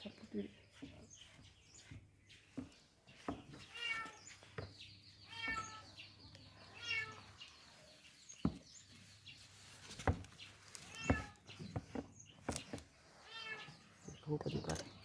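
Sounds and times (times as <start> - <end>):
cat meowing: 3.7 - 4.2, 5.3 - 5.9, 6.7 - 7.2, 10.9 - 11.4, 13.2 - 13.8.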